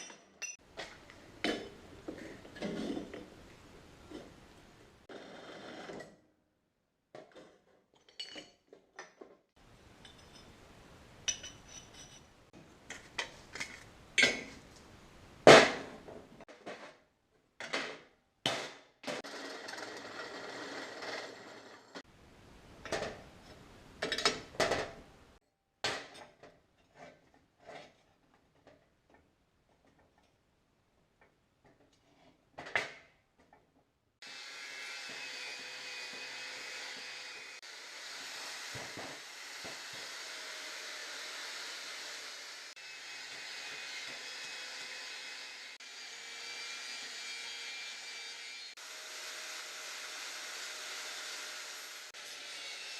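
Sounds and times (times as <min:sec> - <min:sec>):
metal parts and tools clanking: 0:00.0 - 0:03.3, 0:07.2 - 0:09.4, 0:10.0 - 0:10.6, 0:11.2 - 0:14.6, 0:22.8 - 0:25.0.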